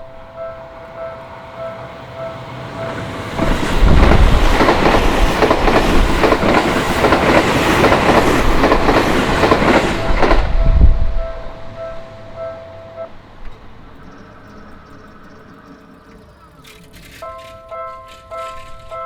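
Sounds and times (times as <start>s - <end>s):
crossing warning bell two-tone: 0.0s - 6.6s, 9.4s - 16.1s, 17.1s - 19.0s
electric train passing: 0.0s - 19.0s
wheels clacking over rail joints: 2.4s - 19.0s.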